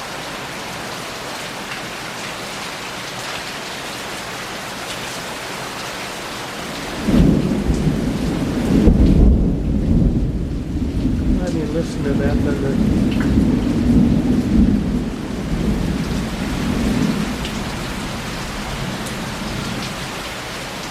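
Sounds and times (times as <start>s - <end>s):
heavy rain falling: 0.0s - 20.9s
thunder rumbling: 6.9s - 20.0s.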